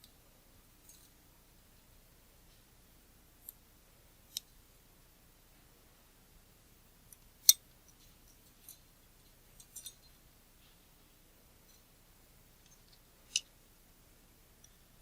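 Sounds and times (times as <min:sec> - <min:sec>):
metal tool clicks: 0:09.6 - 0:10.1.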